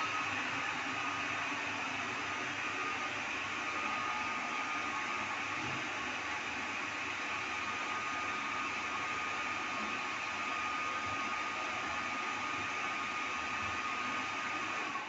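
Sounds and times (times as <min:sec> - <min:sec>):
electric dryer running: 0:00.0 - 0:15.0.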